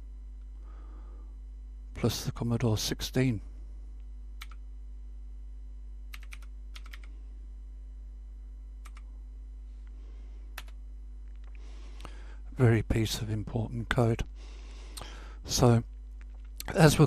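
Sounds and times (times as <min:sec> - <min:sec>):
low hum: 0:00.0 - 0:17.0
keyboard keys typing: 0:04.4 - 0:04.6, 0:06.1 - 0:07.1, 0:08.8 - 0:09.1.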